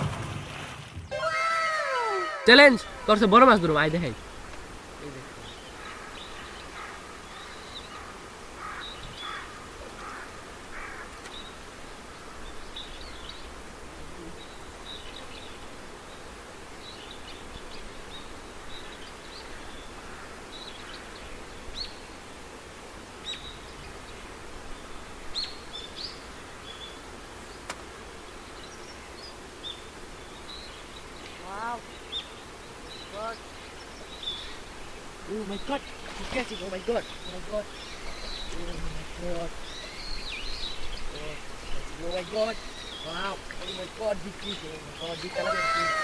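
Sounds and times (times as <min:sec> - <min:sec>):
outdoor background noise: 0:00.0 - 0:46.0.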